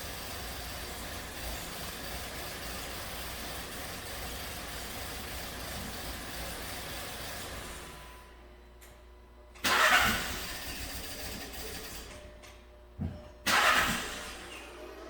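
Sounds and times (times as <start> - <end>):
engine idling and misfiring: 0.0 - 7.9, 9.6 - 12.2, 13.4 - 15.0.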